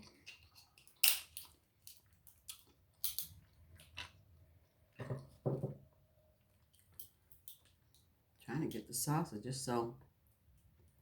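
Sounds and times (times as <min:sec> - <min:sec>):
crab shells cracking: 0:00.7 - 0:03.4.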